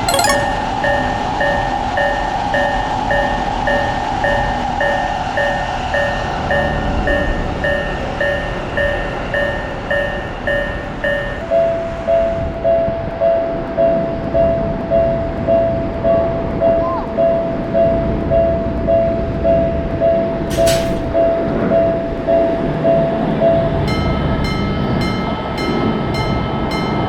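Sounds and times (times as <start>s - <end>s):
higher-pitched crossing bell: 0.1s - 0.9s
level crossing warning bells ringing: 3.7s - 11.4s.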